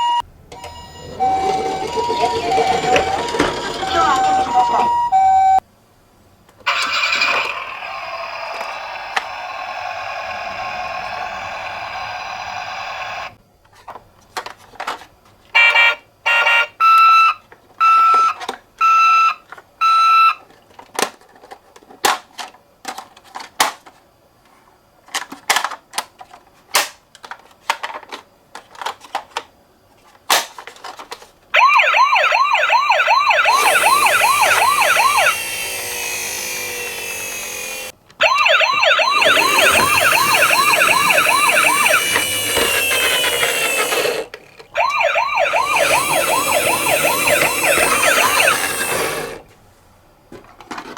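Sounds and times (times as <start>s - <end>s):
electronic toy siren warbling: 0.0s - 5.6s, 31.6s - 49.4s
toy cars rolling: 0.5s - 5.0s, 6.6s - 15.8s, 20.4s - 24.0s, 25.0s - 49.6s.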